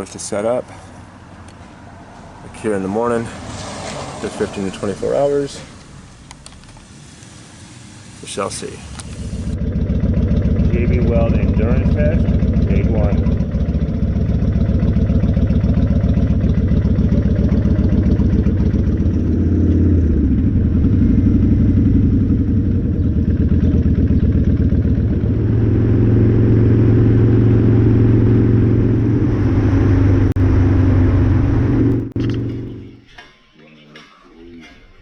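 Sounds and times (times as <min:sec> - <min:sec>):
motorcycle engine accelerating: 0:08.8 - 0:33.1.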